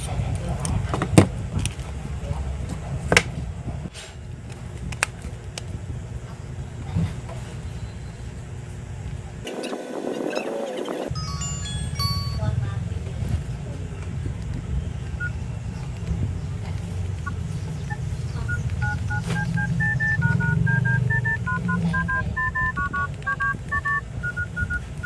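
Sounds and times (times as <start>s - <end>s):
phone keypad beeps: 17.2s - 25.0s.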